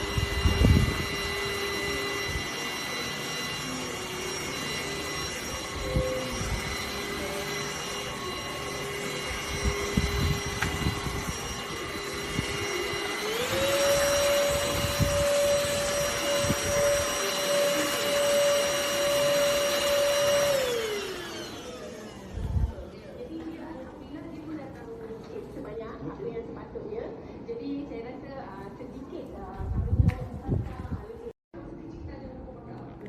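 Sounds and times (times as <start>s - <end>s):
handheld vacuum cleaner motor whine: 0.0s - 23.0s.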